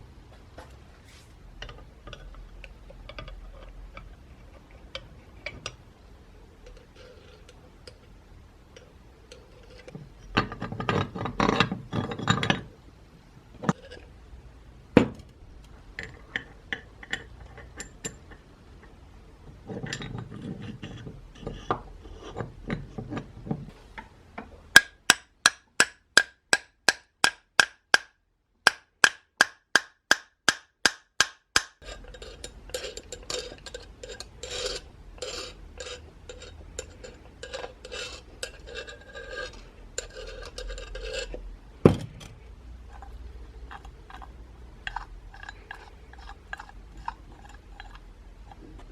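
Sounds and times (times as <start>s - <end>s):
metal rubbing and scraping: 6.6s - 8.1s, 31.8s - 48.9s.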